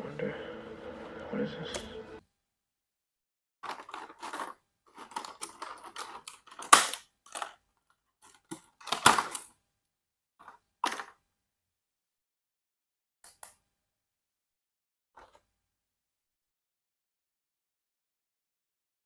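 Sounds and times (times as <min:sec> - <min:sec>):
packaging rustling and crinkling: 0:03.6 - 0:07.6, 0:08.2 - 0:09.6
sharp plastic clicks: 0:05.1 - 0:07.6.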